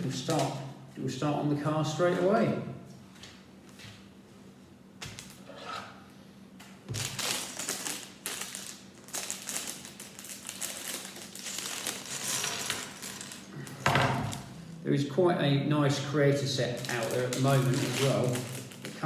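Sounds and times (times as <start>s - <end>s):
plastic bags crinkling: 6.9s - 14.8s, 16.6s - 19.0s.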